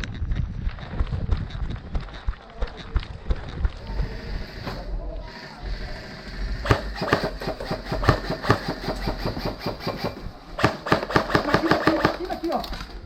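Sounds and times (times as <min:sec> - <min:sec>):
airsoft guns firing: 0:06.3 - 0:13.0.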